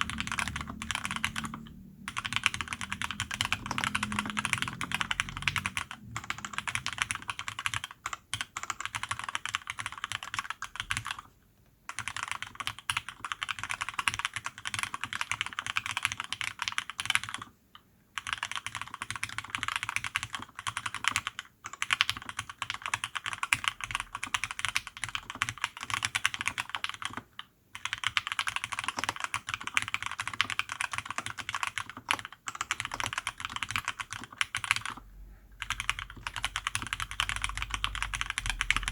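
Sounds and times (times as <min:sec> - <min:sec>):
mechanical keyboard typing: 0:00.0 - 0:11.3, 0:11.9 - 0:17.6, 0:18.2 - 0:38.9.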